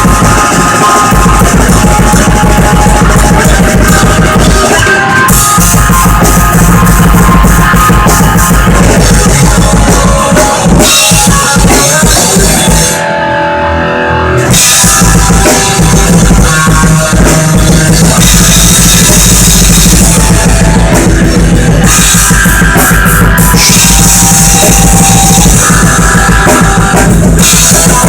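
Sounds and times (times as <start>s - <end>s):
drum kit beat: 0.0s - 13.0s, 14.4s - 28.0s
electric guitar: 0.0s - 28.0s.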